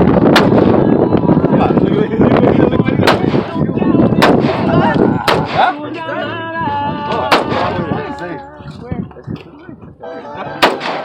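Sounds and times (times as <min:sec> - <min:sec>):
gunshots: 0:00.2 - 0:00.8, 0:03.0 - 0:03.6, 0:04.2 - 0:05.8, 0:07.3 - 0:07.8, 0:10.6 - 0:11.0.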